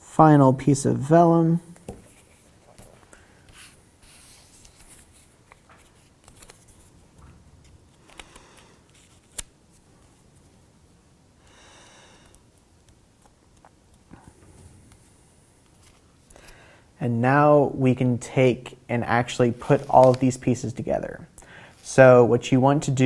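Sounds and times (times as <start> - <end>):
paper rustling and light taps: 1.8 - 7.3, 19.6 - 20.4.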